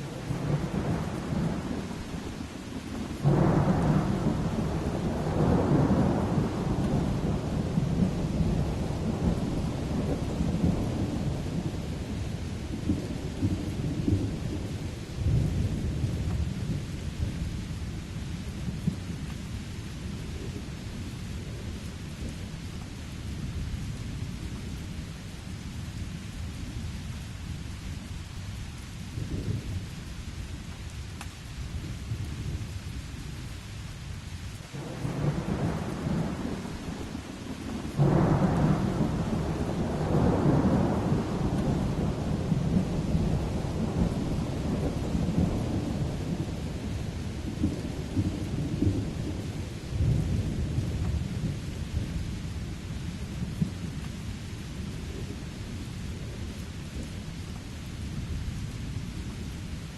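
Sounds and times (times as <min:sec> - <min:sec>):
thunder rumbling: 0:00.0 - 0:17.7, 0:34.5 - 0:57.2
steady rain: 0:00.0 - 0:59.9
loud thunderclap: 0:37.7 - 0:46.7.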